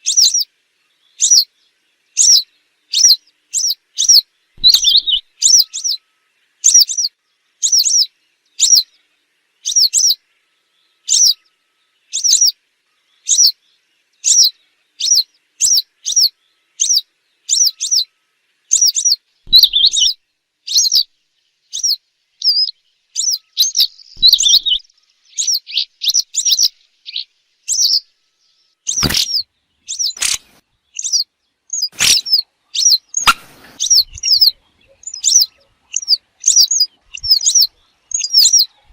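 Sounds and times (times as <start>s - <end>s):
wagtail calling: 2.2s - 9.0s, 18.7s - 21.1s, 21.7s - 28.1s, 28.9s - 38.9s
sharp clicks: 28.9s - 29.4s, 30.0s - 30.6s, 32.0s - 32.4s.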